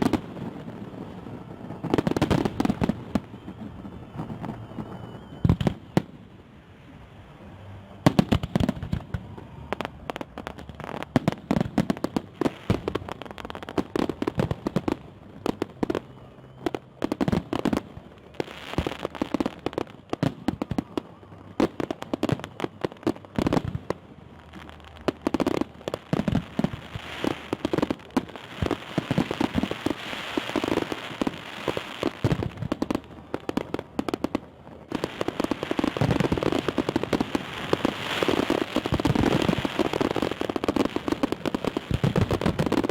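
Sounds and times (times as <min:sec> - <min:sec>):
fireworks bangs and crackling: 0:00.0 - 0:42.9.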